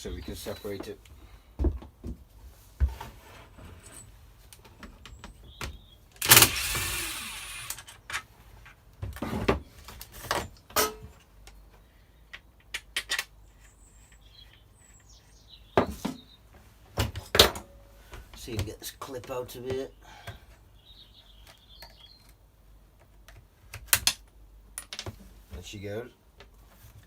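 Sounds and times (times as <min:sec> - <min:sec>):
tool clicking on plastic parts: 0:06.2 - 0:08.2.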